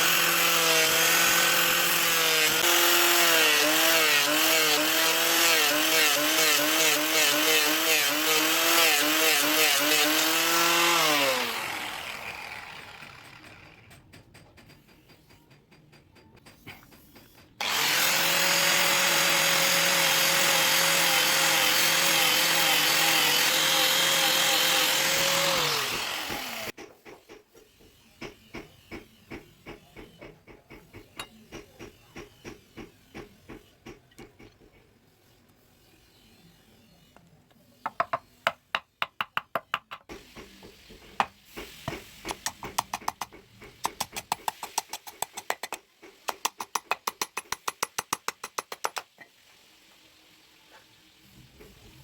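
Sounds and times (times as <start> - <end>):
electric power tool running: 0.0 - 13.7, 17.6 - 26.7
hand-worked strokes clicking: 0.0 - 27.6, 41.1 - 49.2.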